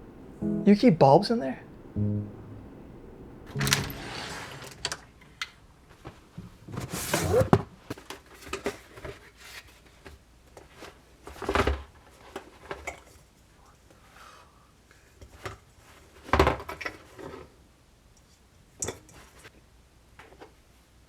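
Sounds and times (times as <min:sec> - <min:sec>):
rummaging in a drawer: 0:06.7 - 0:07.6
scrape in a drawer: 0:06.7 - 0:07.6.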